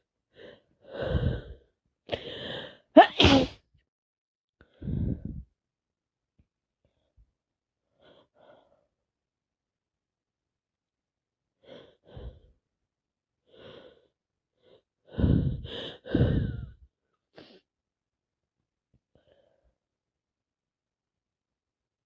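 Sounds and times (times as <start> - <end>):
woman sneezing: 3.0 - 3.6.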